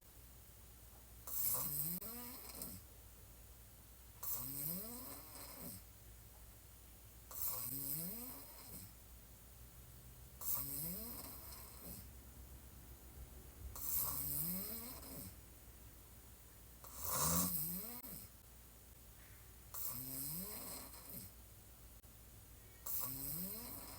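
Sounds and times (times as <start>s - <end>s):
woman snoring: 1.3s - 2.8s, 4.2s - 5.8s, 7.3s - 8.9s, 10.4s - 12.1s, 13.8s - 15.4s, 16.8s - 18.3s, 19.8s - 21.3s, 22.9s - 23.9s.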